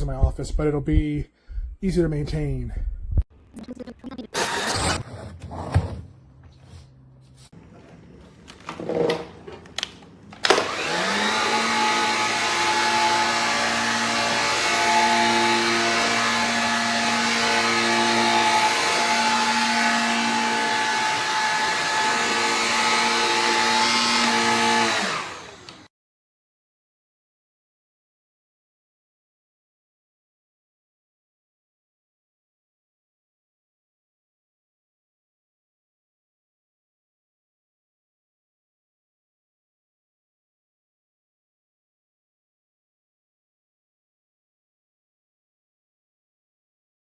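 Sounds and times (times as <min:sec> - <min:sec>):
cordless vacuum motor running: 0:04.3 - 0:05.0, 0:10.4 - 0:25.9.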